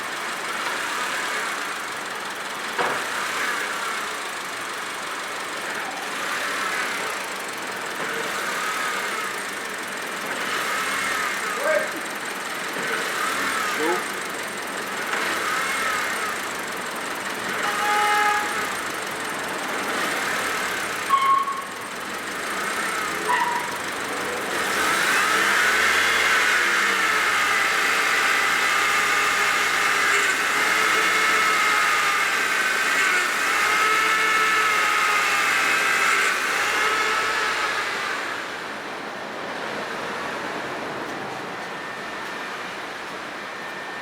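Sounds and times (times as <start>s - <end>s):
car engine whine: 0.0s - 44.0s
short tones: 21.0s - 22.0s, 23.2s - 23.8s.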